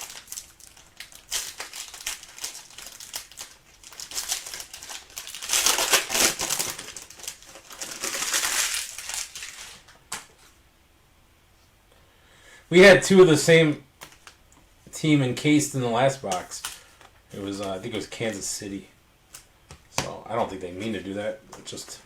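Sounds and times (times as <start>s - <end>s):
plastic packaging crinkling: 0.0s - 10.0s.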